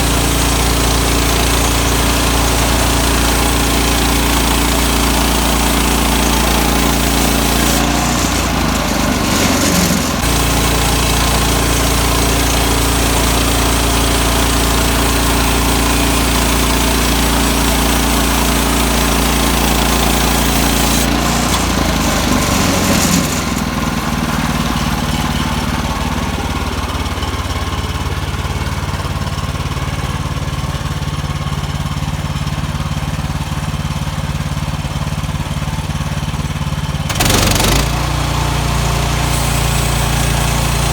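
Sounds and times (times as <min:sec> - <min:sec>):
bandsaw mill engine sawing: 0:00.0 - 0:40.9.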